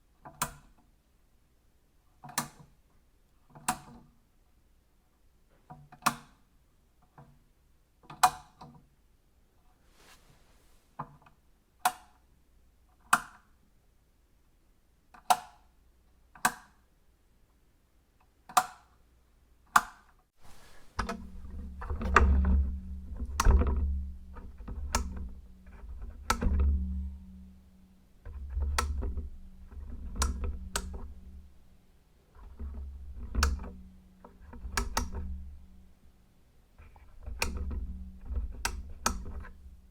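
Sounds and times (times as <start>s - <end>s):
low steady hum: 20.4s - 39.9s.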